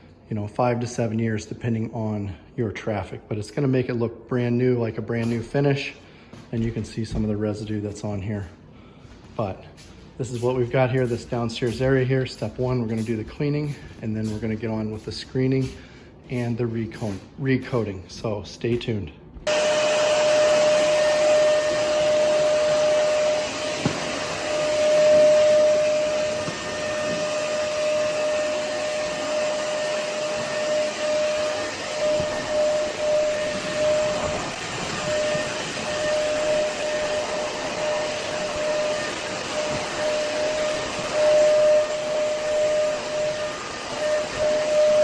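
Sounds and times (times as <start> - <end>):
floor-care machine whining: 19.4 - 45.0.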